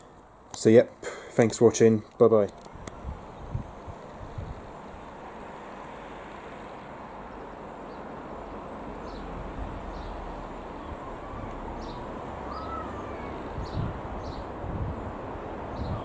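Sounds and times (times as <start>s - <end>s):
wind noise on microphone: 2.6s - 5.2s, 9.3s - 16.0s
high bird chirps: 11.3s - 14.5s.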